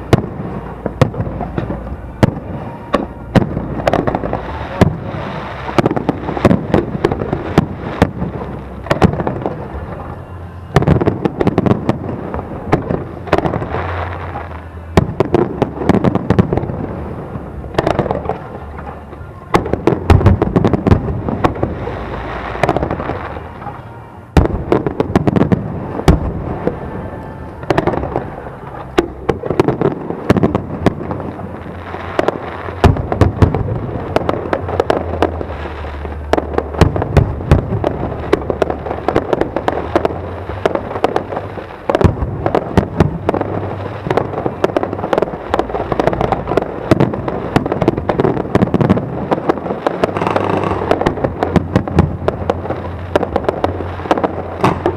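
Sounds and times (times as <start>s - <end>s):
fireworks bursting with heavy bangs: 0.0s - 54.9s
fireworks crackling: 0.0s - 54.9s.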